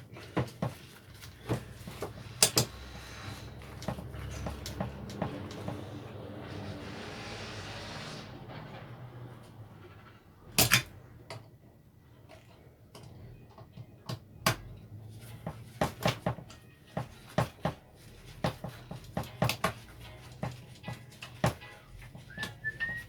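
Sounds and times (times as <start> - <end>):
hand tools clicking on metal: 0.2 - 6.0.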